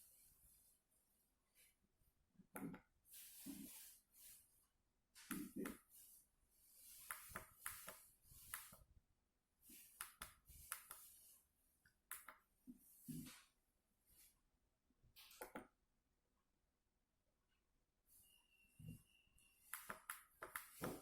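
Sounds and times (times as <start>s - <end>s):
faint irregular clicks: 11.8s - 12.4s.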